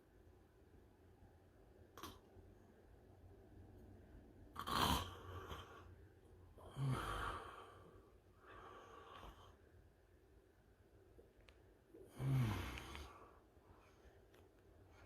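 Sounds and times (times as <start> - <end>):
man snoring: 4.6 - 5.9, 6.6 - 8.0, 12.1 - 13.2.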